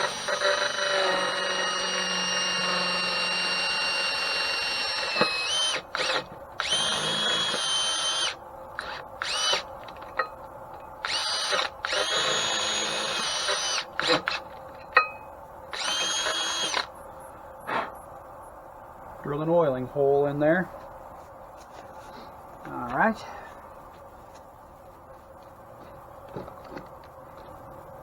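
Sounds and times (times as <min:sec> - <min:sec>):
electric drill whining: 0:00.0 - 0:10.2, 0:11.0 - 0:14.5, 0:15.7 - 0:16.9.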